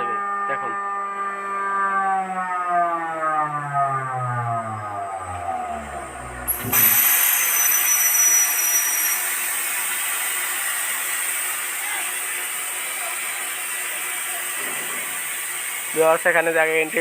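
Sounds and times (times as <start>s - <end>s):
high whistling tones: 4.7s - 9.7s
air compressor venting hiss: 6.5s - 17.0s.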